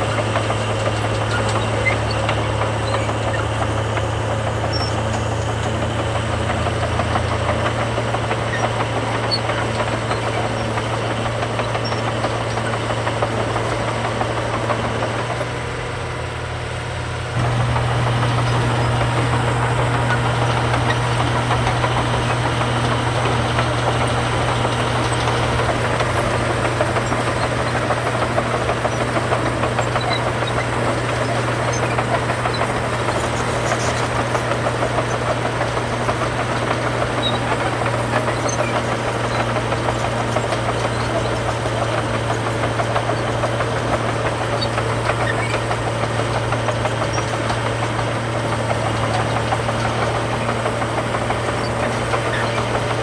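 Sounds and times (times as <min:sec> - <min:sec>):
heavy diesel engine droning: 0:00.0 - 0:53.0.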